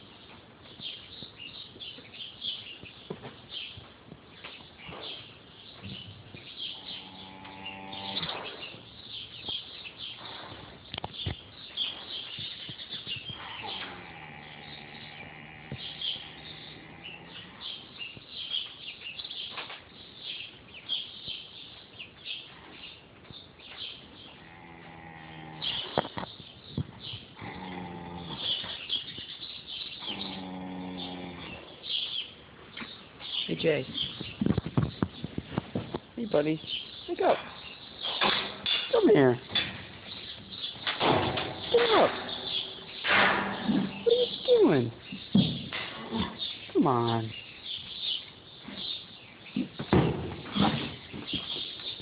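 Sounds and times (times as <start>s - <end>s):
pet snoring: 13.4s - 17.7s.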